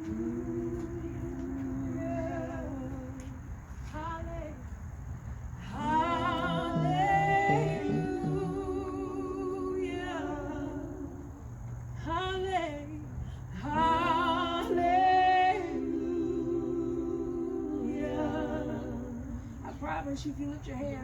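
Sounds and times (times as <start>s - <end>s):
woman singing worship chorus: 0.0s - 4.7s, 5.5s - 21.0s.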